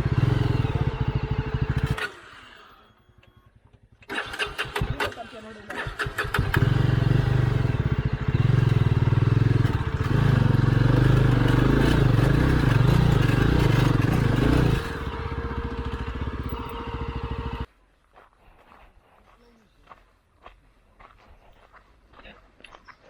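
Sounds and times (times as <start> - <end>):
motorcycle engine running: 0.0 - 17.7.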